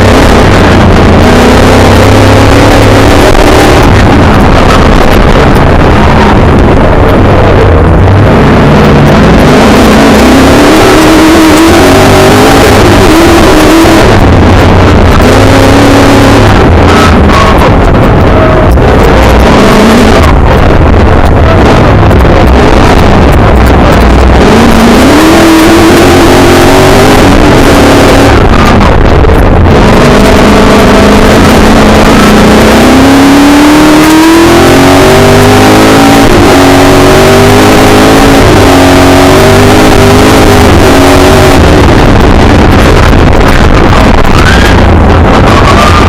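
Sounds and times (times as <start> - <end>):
racing car engine revving: 0.0 - 46.0
road noise on wet surface: 0.0 - 46.0.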